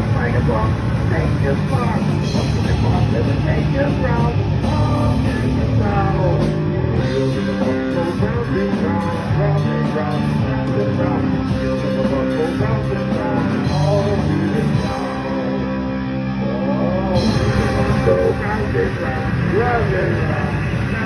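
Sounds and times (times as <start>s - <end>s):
guitar: 0.0s - 21.0s
person singing: 0.0s - 21.0s
rock band playing: 0.0s - 21.0s.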